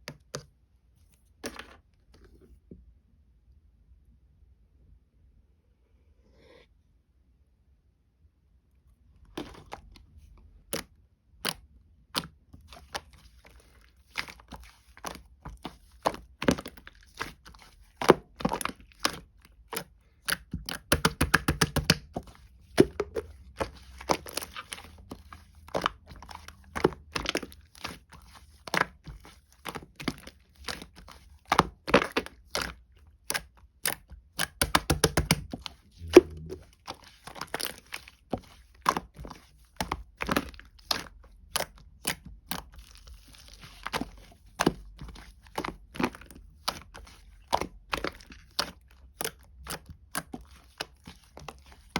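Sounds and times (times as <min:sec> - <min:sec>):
slime popping and crackling: 0:22.7 - 0:51.9.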